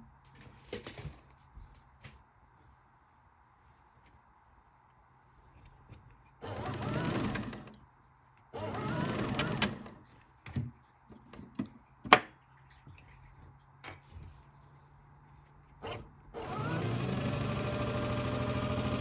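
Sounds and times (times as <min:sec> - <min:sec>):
toy washing machine motor whirring: 0:15.9 - 0:19.0.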